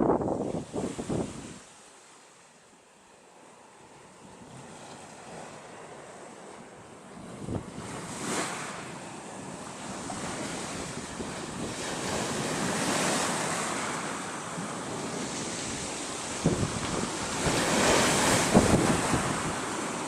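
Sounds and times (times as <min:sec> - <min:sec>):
wind buffeting microphone: 0:00.0 - 0:01.6, 0:07.2 - 0:20.0
sea surf breaking: 0:00.0 - 0:02.2, 0:03.4 - 0:20.0.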